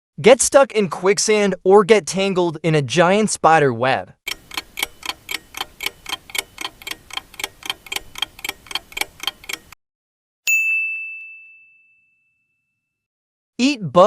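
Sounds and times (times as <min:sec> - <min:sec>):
countdown clock ticking: 0:04.3 - 0:09.8
bell ding: 0:10.5 - 0:13.0.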